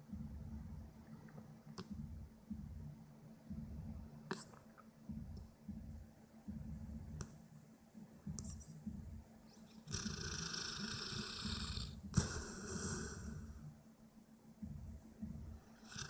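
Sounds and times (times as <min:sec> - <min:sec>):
dog snoring: 0:09.8 - 0:13.6, 0:15.8 - 0:16.0
hissing nasal breath: 0:09.9 - 0:13.6.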